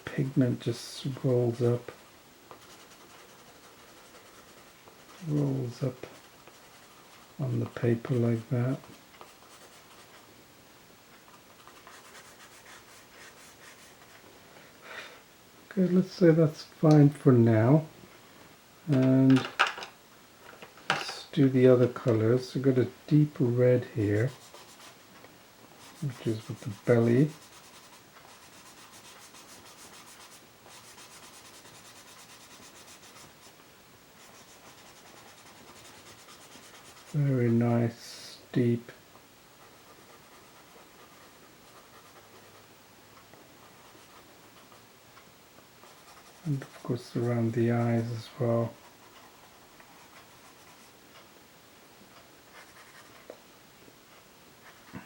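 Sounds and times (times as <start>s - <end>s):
pencil scratching on paper: 2.5s - 7.3s, 8.0s - 10.2s, 11.6s - 14.2s, 24.1s - 25.0s, 25.8s - 33.5s, 34.2s - 37.2s, 39.6s - 42.7s, 43.6s - 44.8s, 45.8s - 50.9s, 52.5s - 53.3s.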